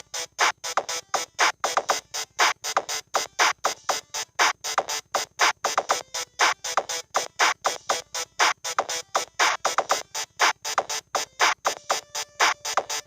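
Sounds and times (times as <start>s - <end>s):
synthesized phone ringtone: 5.7s - 13.0s.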